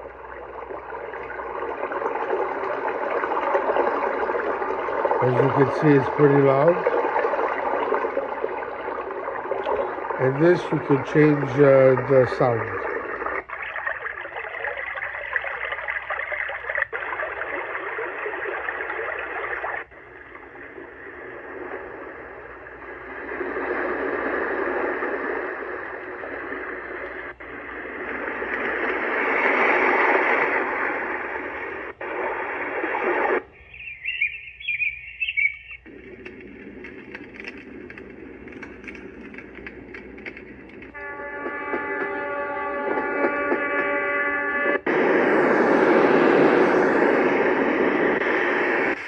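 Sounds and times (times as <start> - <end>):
rushing water-like noise: 0.0 - 33.4, 35.8 - 49.0
birds chirping: 33.2 - 37.8.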